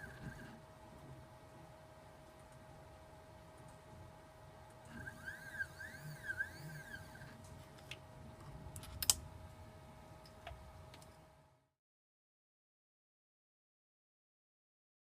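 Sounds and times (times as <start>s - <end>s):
faint steady hum: 0.0s - 11.8s
stepper motors whining: 4.9s - 7.4s.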